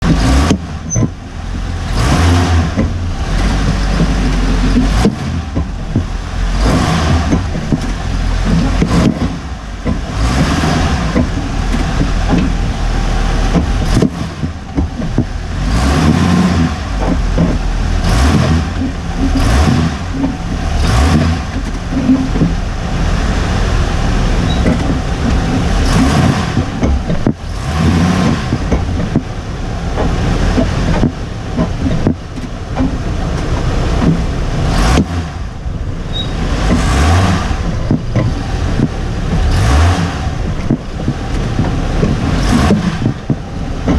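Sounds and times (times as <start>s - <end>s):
sharp clunks from suspension: 0.0s - 22.9s, 24.3s - 35.4s, 36.1s - 43.9s
vehicle engine running: 0.0s - 43.9s.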